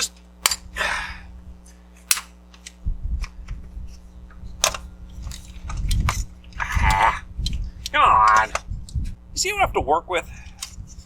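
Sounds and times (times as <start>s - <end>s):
low rumbling handling noise: 0.0s - 11.0s.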